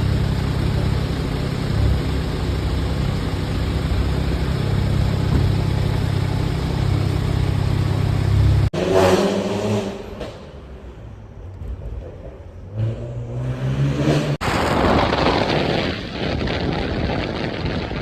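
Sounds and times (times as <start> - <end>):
car engine idling: 0.0 - 8.7.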